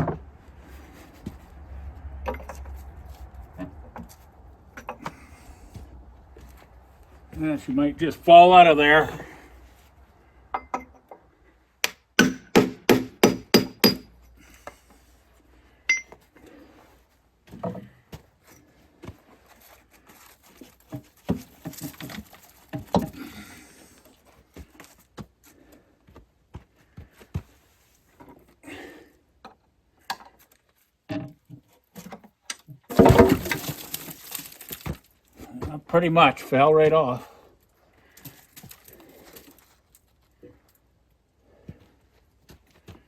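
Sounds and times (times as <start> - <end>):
clinks and knocks of tools: 2.2 - 2.8, 4.8 - 5.2, 10.5 - 11.2, 15.9 - 16.2.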